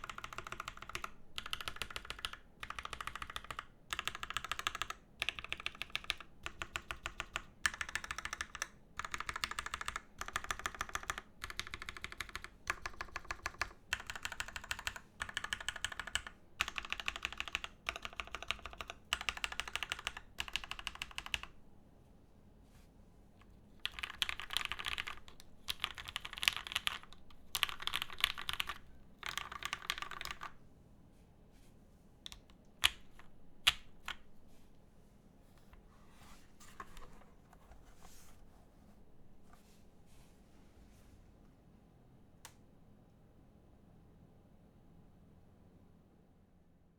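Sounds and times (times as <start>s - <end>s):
mechanical keyboard typing: 0.0s - 21.6s, 23.4s - 30.6s, 32.2s - 34.3s.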